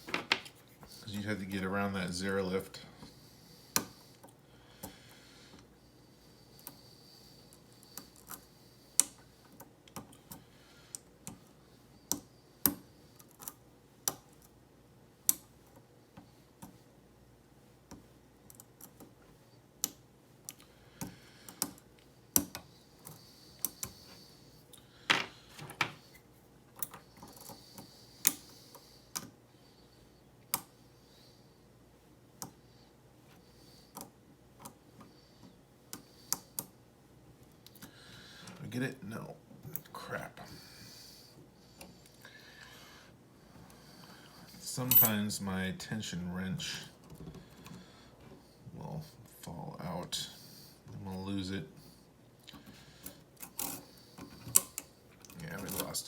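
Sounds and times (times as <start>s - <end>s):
lock pick clicking and scraping: 53.4s - 55.9s.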